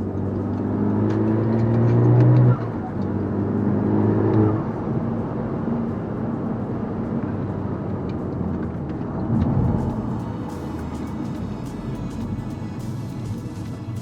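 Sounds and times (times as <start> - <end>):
car engine hum from inside: 0.0 - 14.0
road and tyre noise: 0.0 - 14.0.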